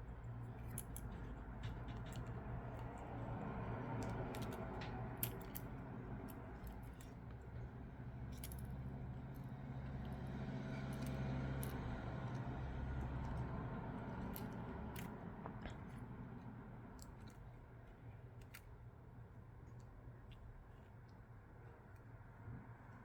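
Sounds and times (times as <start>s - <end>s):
small clicks and taps: 0.5s - 7.7s.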